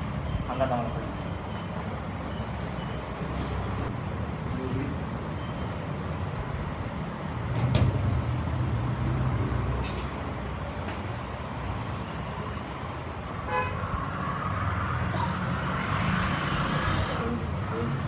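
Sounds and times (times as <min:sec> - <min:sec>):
street traffic rumble: 0:00.0 - 0:18.0
vehicle horn toot: 0:13.5 - 0:13.8.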